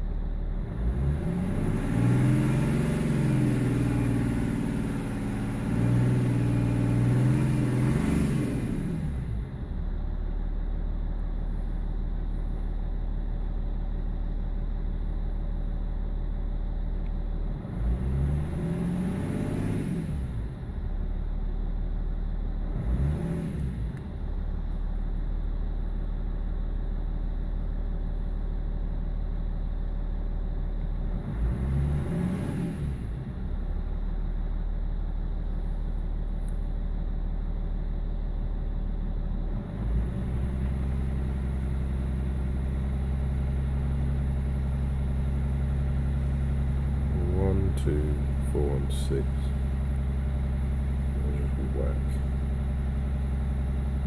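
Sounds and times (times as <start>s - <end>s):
engine throttle blips: 39.7s - 54.0s
diesel engine idling roughly: 42.1s - 54.0s.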